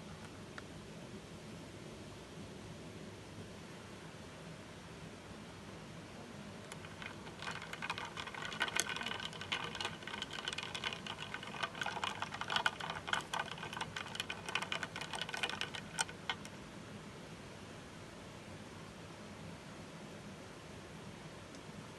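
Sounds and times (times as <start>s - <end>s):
ice cubes clinking in glass: 6.8s - 16.1s.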